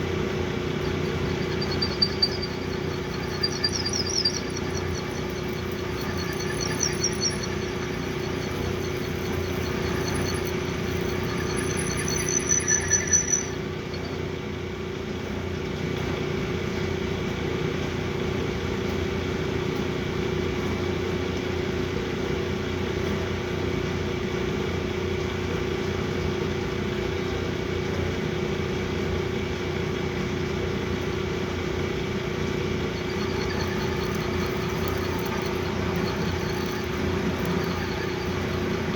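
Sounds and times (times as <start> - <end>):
metal lathe humming: 0.8 - 13.7, 33.0 - 38.9
cutting tool squealing: 0.9 - 14.1, 33.0 - 38.9.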